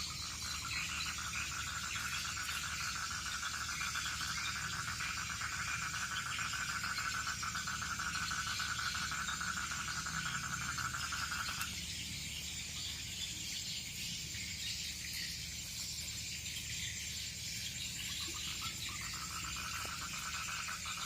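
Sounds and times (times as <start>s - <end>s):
insects chirring high trill: 0.0s - 21.0s.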